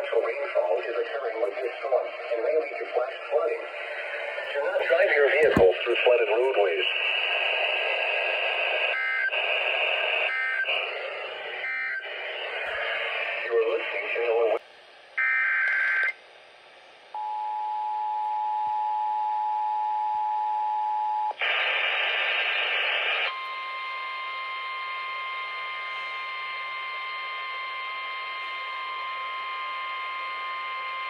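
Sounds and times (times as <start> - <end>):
loud static noise: 0.0 - 15.0, 21.4 - 23.3
steady warning alarm tone: 23.4 - 31.0.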